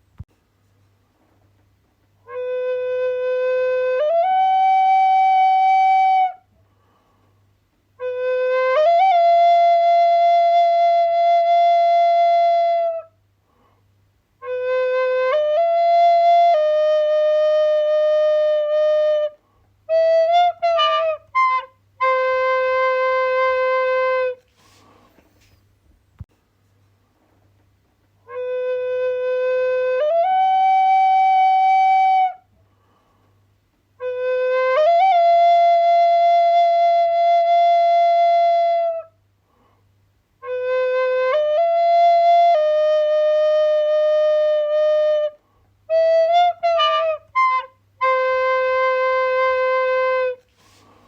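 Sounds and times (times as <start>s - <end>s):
solo flute melody: 2.2s - 6.5s, 8.0s - 13.2s, 14.4s - 24.8s, 28.2s - 32.5s, 34.0s - 39.2s, 40.4s - 51.0s.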